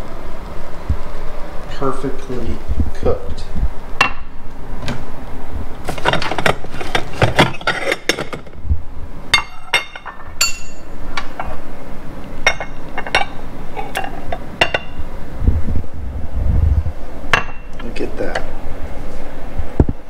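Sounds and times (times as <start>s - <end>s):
dishware clinking against ceramic cup: 9.4s - 10.9s.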